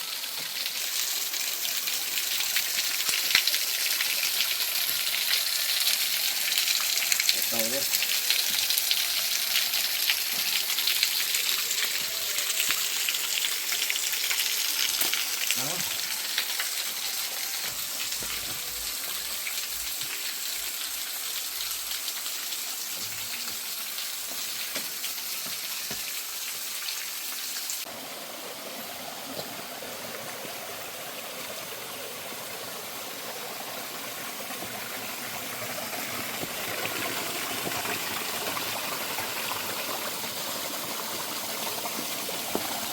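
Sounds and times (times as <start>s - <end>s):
waterfall rushing: 27.8s - 42.9s.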